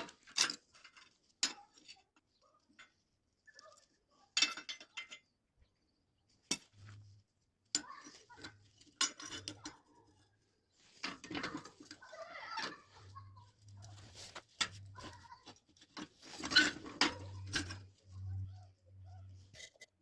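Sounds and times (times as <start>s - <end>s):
steel pieces clanking: 15.9s - 18.5s.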